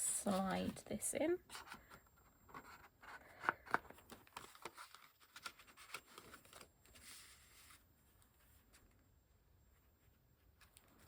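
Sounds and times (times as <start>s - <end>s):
paper rustling: 2.5s - 9.0s.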